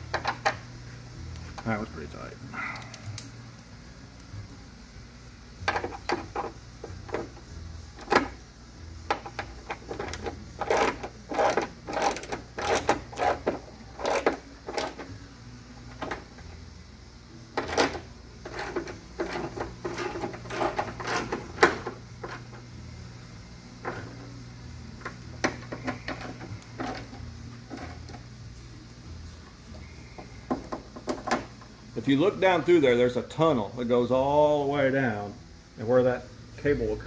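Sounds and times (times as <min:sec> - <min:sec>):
steady low hum: 0:00.0 - 0:37.0
metal parts and cables rattling: 0:17.6 - 0:22.5, 0:25.4 - 0:28.2.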